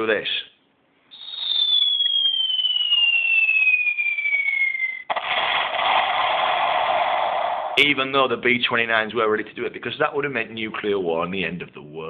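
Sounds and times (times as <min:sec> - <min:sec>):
falling bomb whistle: 0:01.1 - 0:05.2
explosion with rushing noise: 0:05.1 - 0:07.8.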